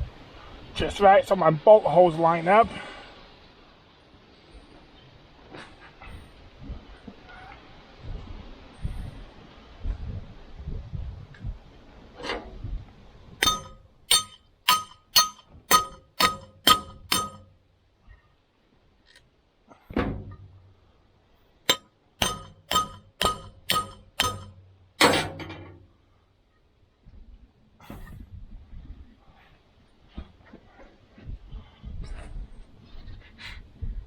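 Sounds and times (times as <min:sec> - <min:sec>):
hammer ringing on steel rim: 0:13.4 - 0:17.5, 0:21.7 - 0:25.4.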